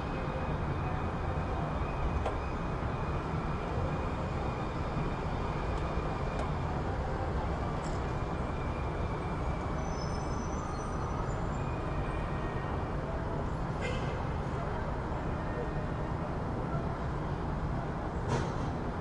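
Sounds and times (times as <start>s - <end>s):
road traffic rumble: 0.0s - 19.0s
faint high squeals: 8.1s - 12.8s.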